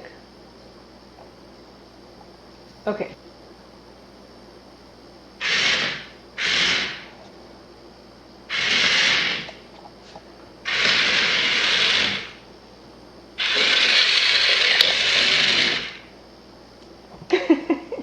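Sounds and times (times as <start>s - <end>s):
small electric motor whirring: 5.4s - 7.1s, 8.5s - 9.6s, 10.7s - 12.4s, 13.4s - 16.1s.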